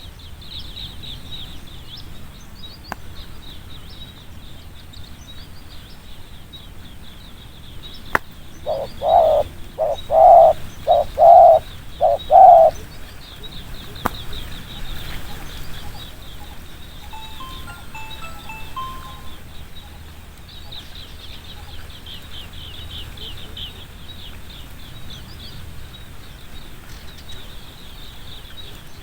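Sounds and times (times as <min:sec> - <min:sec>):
steady high chirping: 0:08.7 - 0:12.7, 0:17.0 - 0:19.6
dove cooing: 0:08.7 - 0:12.8.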